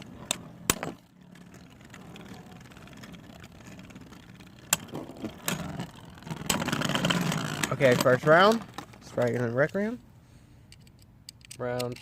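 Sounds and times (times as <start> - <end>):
spinning tops knocking: 0.0 - 8.8
spinning tops whirring: 0.0 - 9.4.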